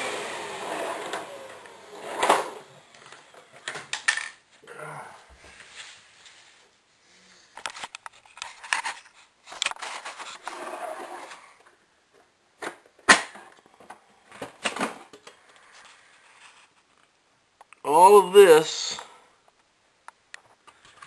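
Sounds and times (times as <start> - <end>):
objects clattering and scraping: 2.0 - 4.4, 7.5 - 11.7.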